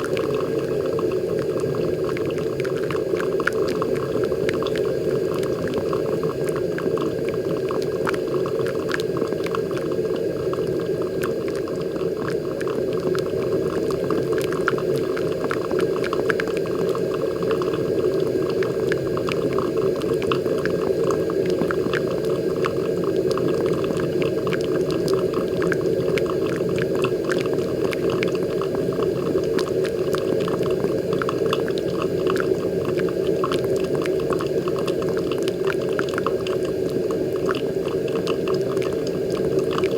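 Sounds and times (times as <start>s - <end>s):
coffee maker bubbling and trickling: 0.0s - 39.9s
small ticks and pops: 0.0s - 39.9s.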